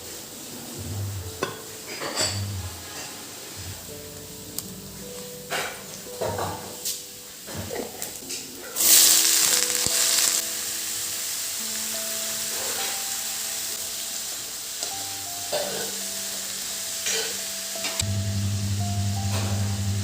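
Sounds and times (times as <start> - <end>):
soft background music: 0.0 - 20.0
food sizzling in hot oil: 8.8 - 20.0.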